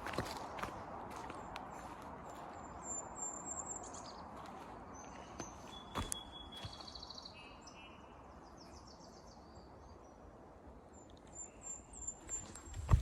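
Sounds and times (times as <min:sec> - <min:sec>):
birds chirping and trilling: 0:00.1 - 0:13.0.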